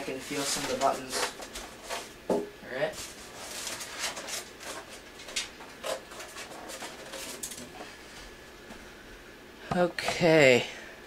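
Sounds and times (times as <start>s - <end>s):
styrofoam rustling and creaking: 0.0s - 7.9s.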